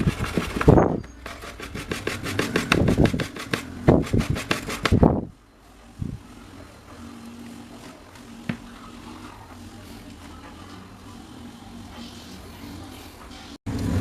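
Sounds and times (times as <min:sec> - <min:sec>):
rasping scraping strokes: 0:00.0 - 0:05.2.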